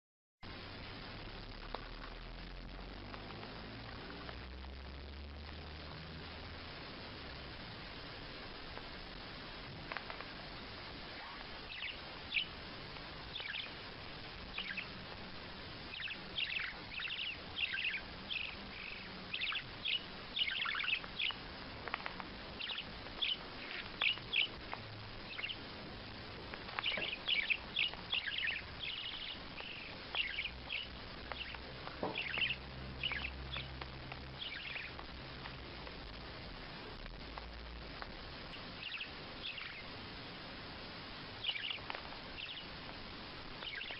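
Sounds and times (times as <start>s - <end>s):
steady hiss: 0.4s - 43.9s
small bird chirping: 9.9s - 36.5s, 38.5s - 40.0s, 41.4s - 42.9s, 43.5s - 43.9s.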